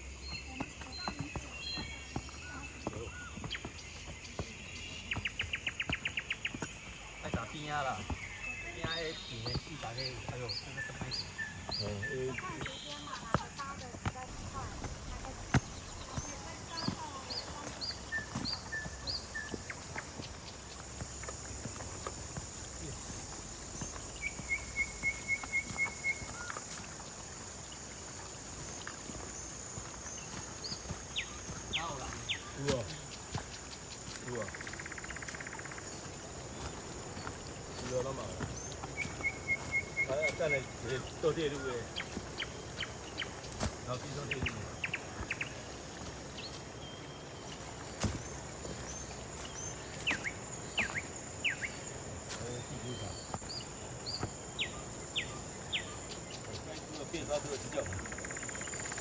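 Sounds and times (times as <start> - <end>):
high insect drone: 0.0 - 59.0
high-pitched insect drone: 56.7 - 59.0.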